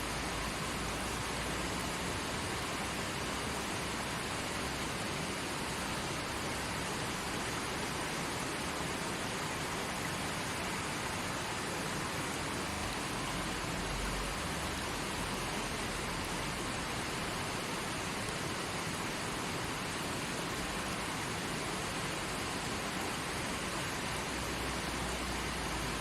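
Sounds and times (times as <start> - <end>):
river rushing over rocks: 0.0 - 26.0.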